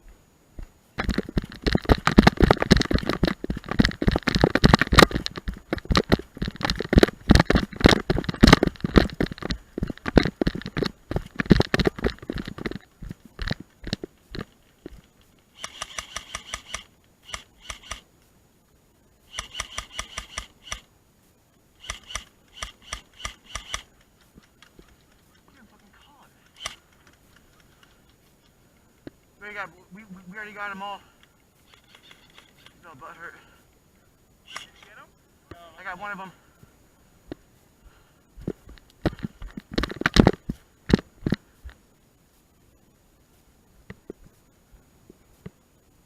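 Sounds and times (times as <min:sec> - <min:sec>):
quick clicking bursts: 0:01.0 - 0:18.1, 0:19.3 - 0:20.9, 0:21.8 - 0:29.4, 0:31.1 - 0:32.8, 0:34.5 - 0:35.0.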